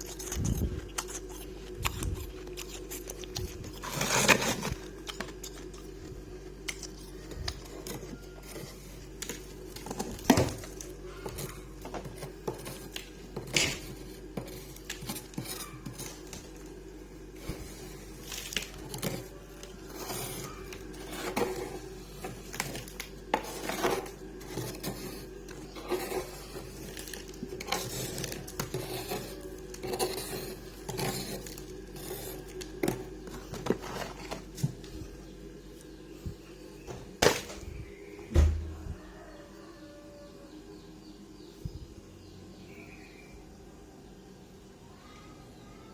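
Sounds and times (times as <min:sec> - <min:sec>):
frost being scraped and crunched: 0:00.0 - 0:35.1
steady low hum: 0:00.0 - 0:45.8.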